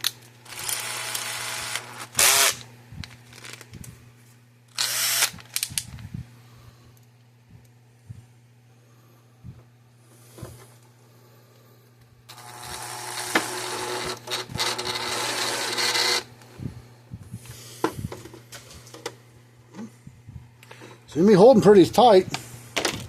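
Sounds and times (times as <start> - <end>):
small motorised tool running: 0.4 - 2.6, 4.8 - 5.5, 12.3 - 16.3.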